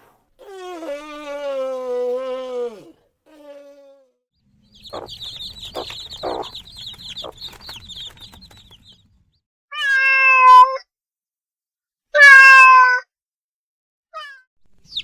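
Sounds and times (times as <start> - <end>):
faint chicken clucking: 2.6 - 9.0
cat meowing: 9.7 - 10.8, 12.2 - 13.0.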